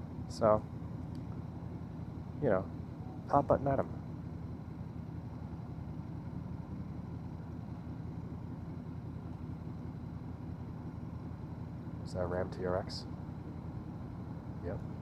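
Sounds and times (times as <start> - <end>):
motorcycle engine cruising: 0.0 - 15.0.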